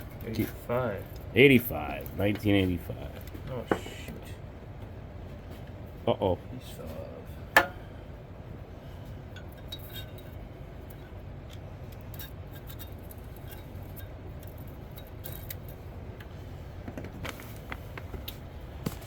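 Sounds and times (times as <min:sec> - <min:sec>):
steady low hum: 0:00.0 - 0:19.0
metallic clicks of parts and tools: 0:09.4 - 0:16.3.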